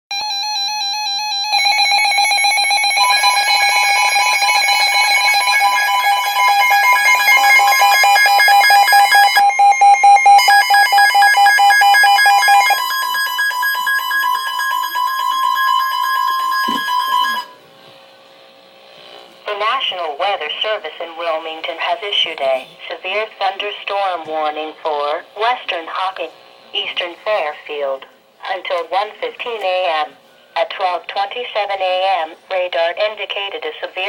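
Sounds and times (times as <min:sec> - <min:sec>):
layered electronic alert tones: 0:00.4 - 0:17.6
rapid pulsing beep: 0:01.4 - 0:17.6.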